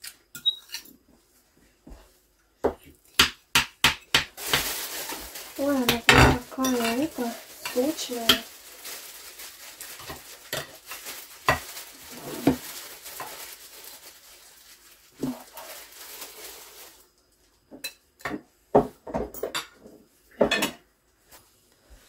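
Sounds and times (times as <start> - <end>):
utensils scraping a baking dish: 5.6 - 8.4, 11.5 - 12.6.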